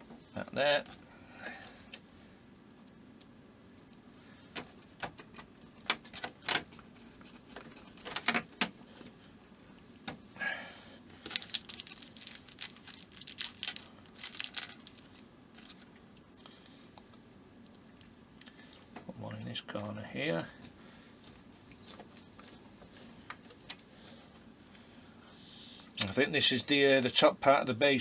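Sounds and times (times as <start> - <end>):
plastic parts clicking and rattling: 4.6 - 8.7, 11.2 - 15.9.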